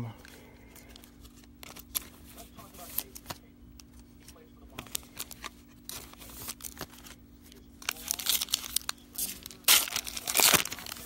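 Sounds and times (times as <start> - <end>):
foil wrapper tearing and crinkling: 4.8 - 7.2, 7.8 - 11.0.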